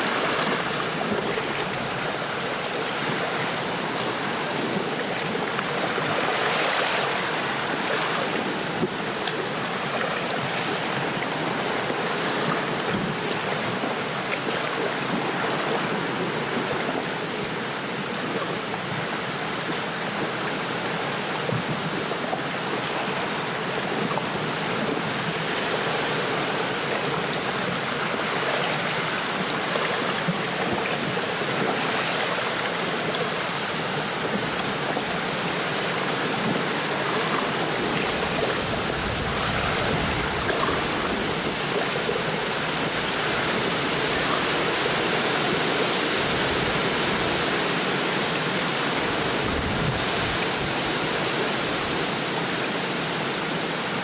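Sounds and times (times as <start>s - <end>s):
small waves lapping: 0.0s - 54.0s
wind rustling through reeds: 36.2s - 52.7s.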